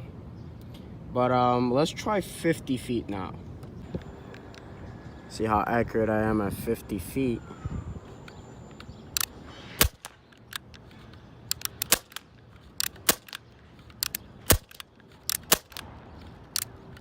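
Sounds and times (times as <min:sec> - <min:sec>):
pistol shots cracking: 0:09.8 - 0:10.6, 0:11.5 - 0:13.4, 0:14.0 - 0:15.9.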